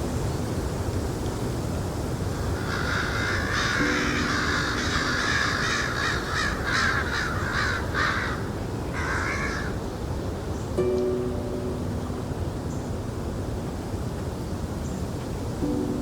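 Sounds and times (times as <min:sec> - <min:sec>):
background hiss: 0:00.0 - 0:08.9, 0:09.8 - 0:16.0
crow cawing: 0:02.6 - 0:09.8.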